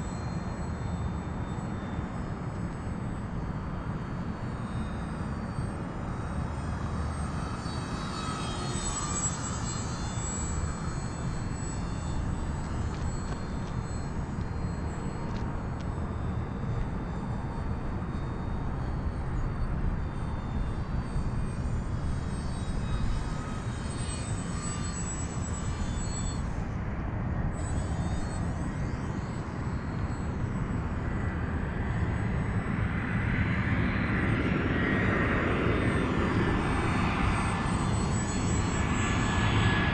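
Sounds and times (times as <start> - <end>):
model plane motor whine: 0.0 - 39.9.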